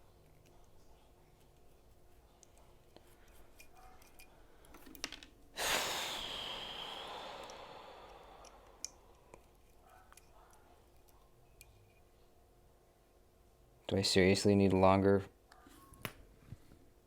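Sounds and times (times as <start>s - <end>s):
person sighing heavily: 5.6s - 8.9s.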